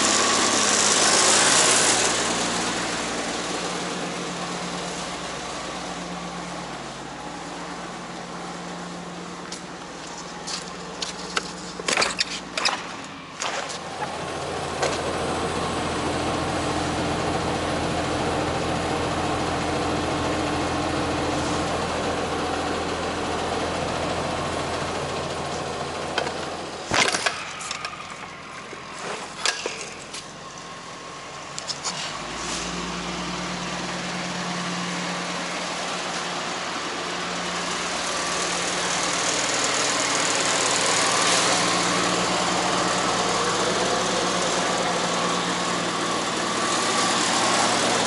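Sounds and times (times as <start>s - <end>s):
truck diesel engine idling: 0.0s - 48.0s
sharp clicks and knocks: 9.5s - 14.1s.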